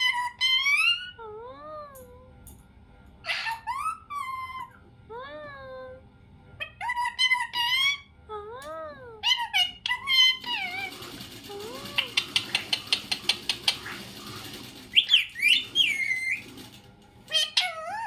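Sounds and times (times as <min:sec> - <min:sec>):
harsh parrot calls: 0:03.2 - 0:04.6, 0:17.3 - 0:18.0
parrot clicking: 0:11.5 - 0:16.5
parrot whistling: 0:14.9 - 0:16.4.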